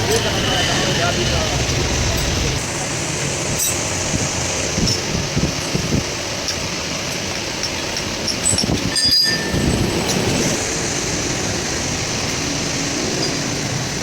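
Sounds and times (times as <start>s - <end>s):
steady mechanical noise: 0.0s - 14.0s
high-pitched metallic squeal: 8.3s - 10.5s.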